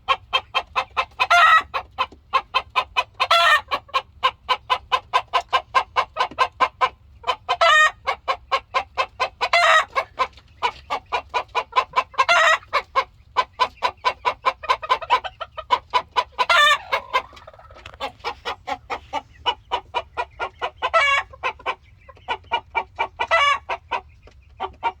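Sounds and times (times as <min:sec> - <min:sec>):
rooster clucking: 0:00.0 - 0:25.0
rooster squawk: 0:16.4 - 0:19.2.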